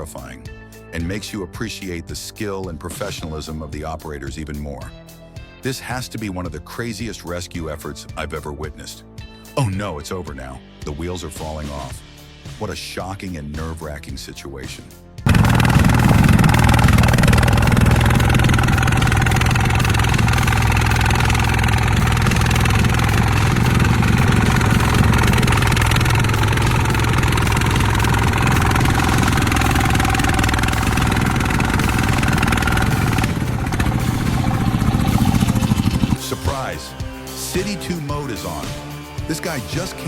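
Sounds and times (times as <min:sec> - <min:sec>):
heavy vehicle engine running: 0:15.3 - 0:36.2.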